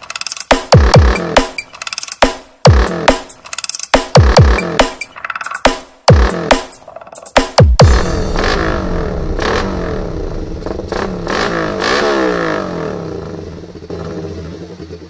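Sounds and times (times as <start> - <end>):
motorcycle engine revving: 0.6 - 1.6, 2.6 - 3.3, 4.2 - 5.0, 6.1 - 7.1, 7.8 - 15.0
sharp exhaust cracks: 7.8 - 15.0.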